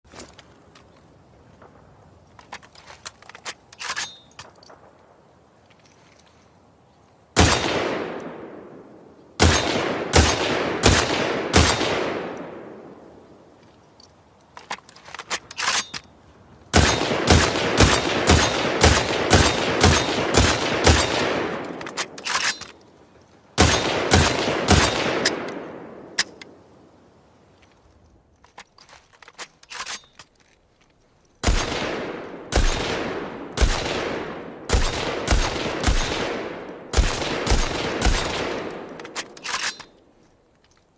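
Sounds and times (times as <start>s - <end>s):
rifle shots with echo: 7.4s - 13.1s, 16.7s - 22.6s, 23.6s - 26.2s, 31.4s - 39.7s.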